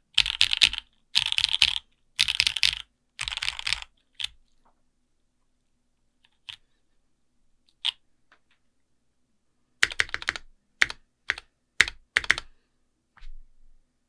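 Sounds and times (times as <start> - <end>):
mechanical keyboard typing: 0.2 - 4.4, 9.8 - 12.5.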